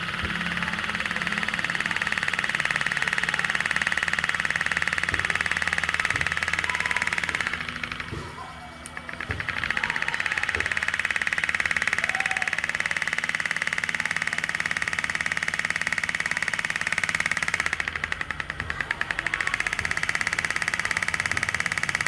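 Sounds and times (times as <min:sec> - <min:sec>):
small two-stroke engine running fast: 0:00.0 - 0:22.0.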